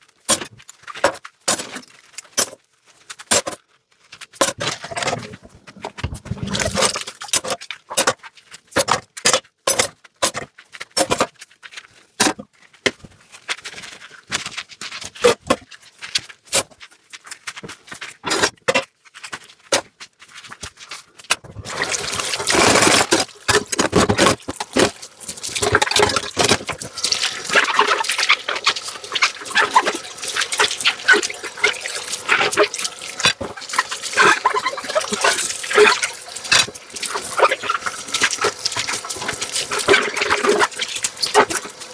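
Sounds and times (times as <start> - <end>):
tap water pouring: 4.4 - 8.1, 21.4 - 41.9.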